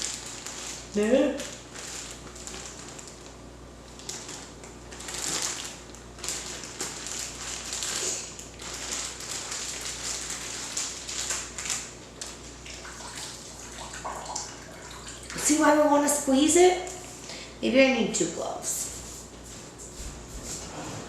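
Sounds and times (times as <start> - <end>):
water dripping and running: 12.2 - 17.2.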